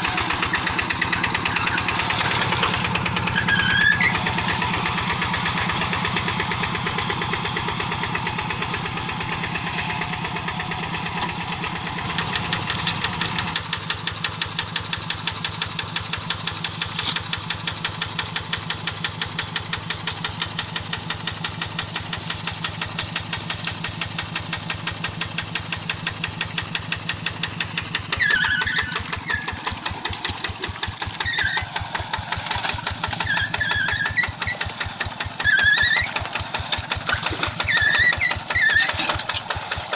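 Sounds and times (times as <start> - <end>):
diesel engine chugging: 0.0 - 39.9
short high squeaks: 1.2 - 4.6, 28.1 - 29.6, 31.2 - 31.8, 33.2 - 34.7, 35.4 - 36.2, 37.0 - 39.5.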